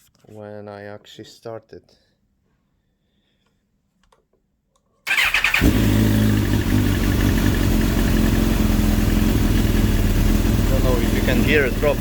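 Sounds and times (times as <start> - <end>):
motorcycle engine starting and idling: 5.1 - 12.0.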